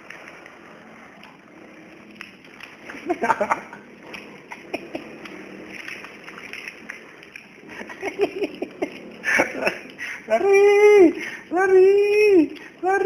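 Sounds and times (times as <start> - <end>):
myna chuckling laugh-like notes: 3.0 - 3.8, 7.7 - 9.9.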